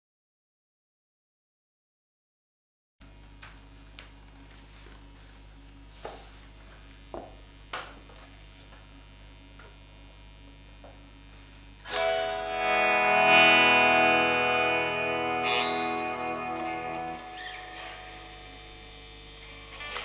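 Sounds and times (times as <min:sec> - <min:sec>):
guitar amp hum: 0:03.0 - 0:20.0
clean electric guitar chord: 0:11.8 - 0:20.0.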